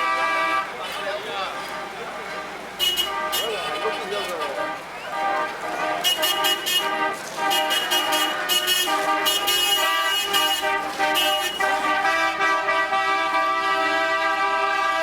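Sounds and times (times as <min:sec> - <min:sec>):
car horns honking: 0:00.0 - 0:15.0
city street traffic: 0:00.0 - 0:15.0.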